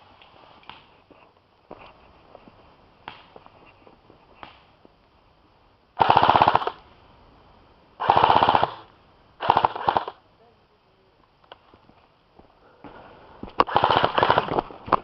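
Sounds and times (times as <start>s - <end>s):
airsoft gun full auto bursts: 6.0s - 6.8s, 8.0s - 10.2s, 13.6s - 14.6s.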